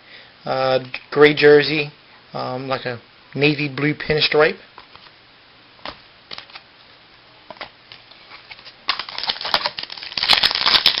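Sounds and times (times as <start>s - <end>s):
cards shuffling and clicking: 5.8s - 6.6s, 7.5s - 11.0s.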